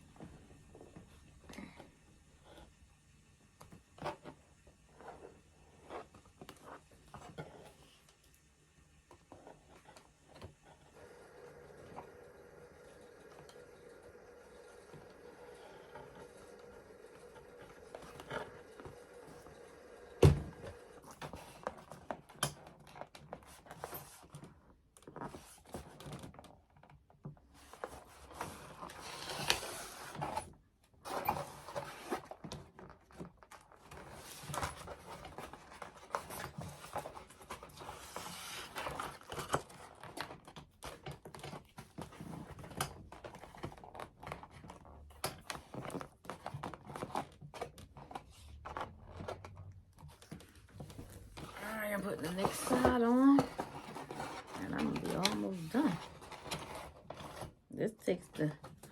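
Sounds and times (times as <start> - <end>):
foam board scraping and tapping: 27.4 - 57.6.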